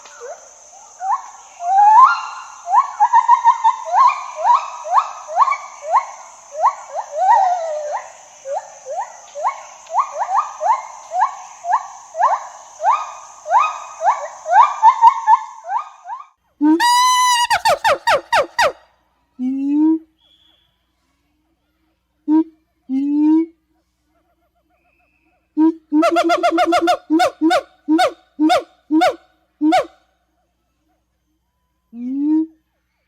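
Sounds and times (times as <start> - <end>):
gibbon whooping calls: 0.1 - 18.8, 25.6 - 30.0.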